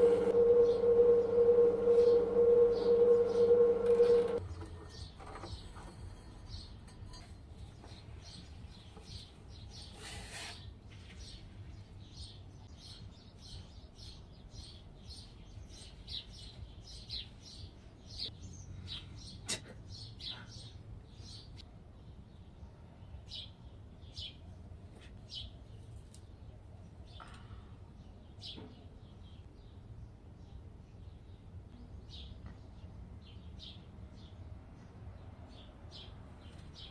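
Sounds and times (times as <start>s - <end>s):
low steady hum: 0.0s - 4.9s
small birds chirping: 6.5s - 36.9s.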